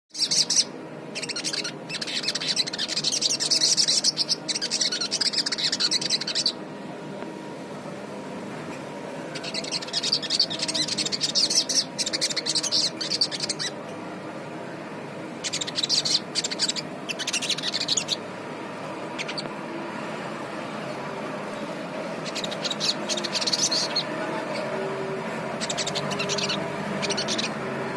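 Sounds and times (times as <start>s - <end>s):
songbird chattering song: 0.1s - 6.6s, 9.3s - 13.8s, 15.4s - 18.3s, 19.0s - 19.6s, 20.8s - 27.7s
low background hum: 0.2s - 27.9s.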